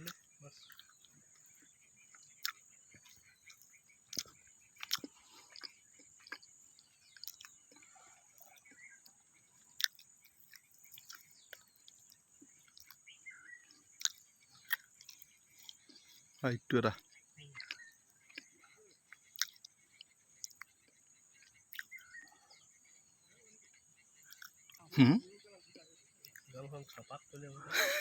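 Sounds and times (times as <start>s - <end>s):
birds chirping: 0.0s - 28.0s.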